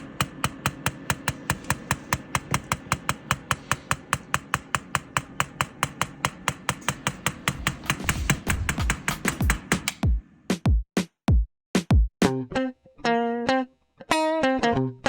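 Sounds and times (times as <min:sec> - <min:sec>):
machine clicking rhythmically: 0:00.0 - 0:10.2.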